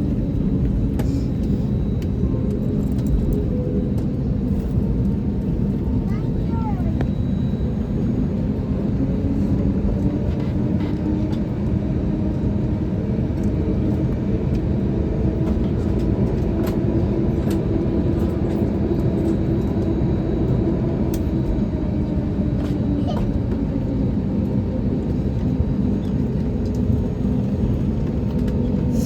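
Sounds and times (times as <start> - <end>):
aircraft cabin rumble: 0.0 - 29.0.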